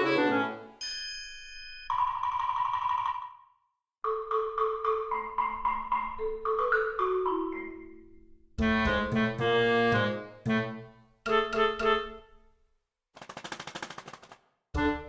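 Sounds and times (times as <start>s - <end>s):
bouncy marimba melody: 4.0s - 8.3s.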